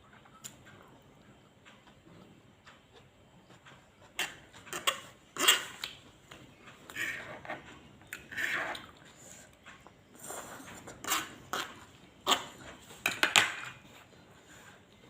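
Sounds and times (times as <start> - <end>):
cutlery scraping a plate: 4.1 - 5.9, 6.9 - 9.4, 10.2 - 14.8.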